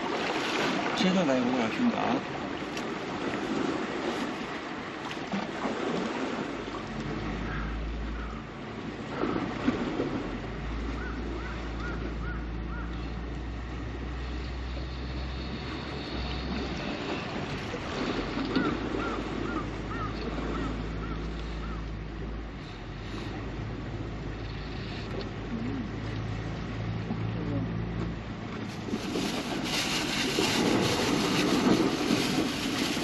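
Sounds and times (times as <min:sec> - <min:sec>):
boat engine humming: 0:00.0 - 0:33.0
sea waves: 0:00.0 - 0:33.0
wind on microphone: 0:28.6 - 0:33.0.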